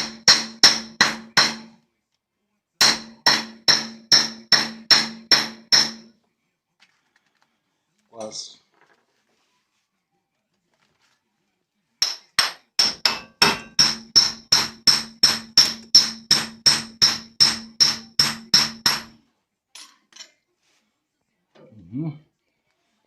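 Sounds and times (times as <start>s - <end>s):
hammer striking metal nut: 0.0s - 1.8s, 2.8s - 6.1s, 12.0s - 19.2s.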